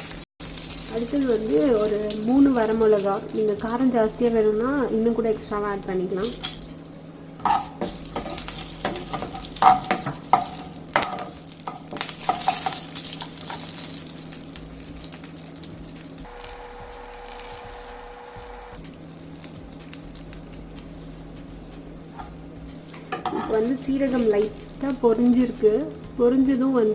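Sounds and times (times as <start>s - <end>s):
spices sizzling in hot oil: 0.0s - 26.9s
spoon scraping a pan: 7.4s - 13.9s, 22.1s - 24.5s.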